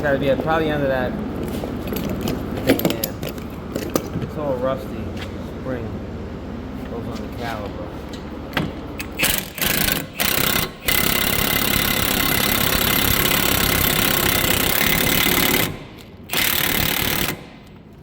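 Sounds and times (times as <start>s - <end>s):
power wrench running: 8.9s - 17.9s.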